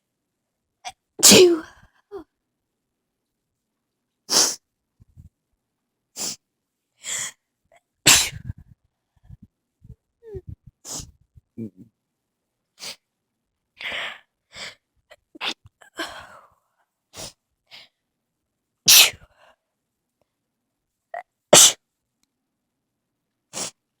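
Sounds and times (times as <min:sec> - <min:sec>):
person sneezing: 0:01.2 - 0:01.7, 0:04.3 - 0:04.6, 0:08.1 - 0:08.7, 0:18.9 - 0:19.2, 0:21.6 - 0:21.8.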